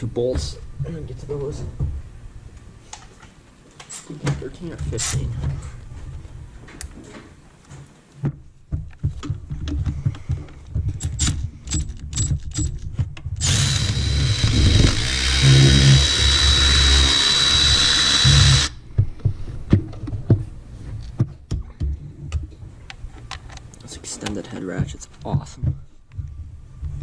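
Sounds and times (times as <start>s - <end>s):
tools clicking on metal: 11.0s - 14.1s
powered ratchet whining: 13.4s - 18.8s.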